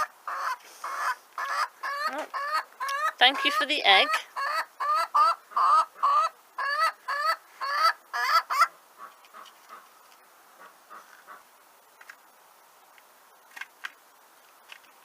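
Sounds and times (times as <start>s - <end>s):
hen clucking: 0.0s - 11.5s.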